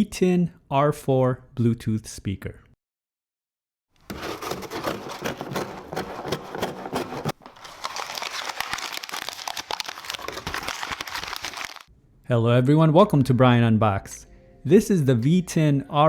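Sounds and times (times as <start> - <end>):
packaging crinkling: 4.1 - 11.9.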